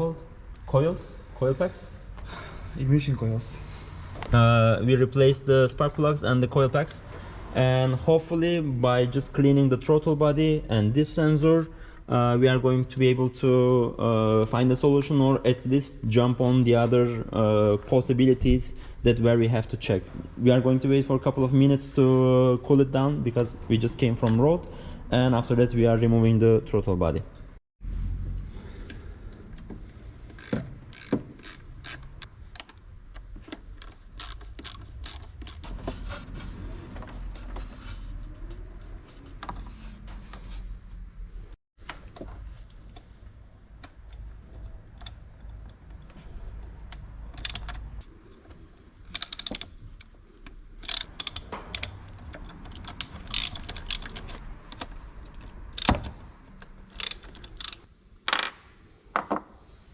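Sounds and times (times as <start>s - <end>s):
ratchet wrench clicking: 30.3s - 32.3s, 33.8s - 35.6s, 47.4s - 47.8s, 49.1s - 50.1s, 50.8s - 54.9s, 55.7s - 56.1s, 56.9s - 57.9s.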